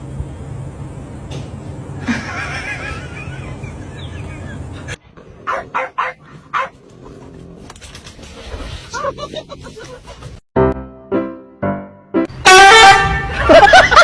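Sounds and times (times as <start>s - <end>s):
dog barking: 5.4s - 6.8s.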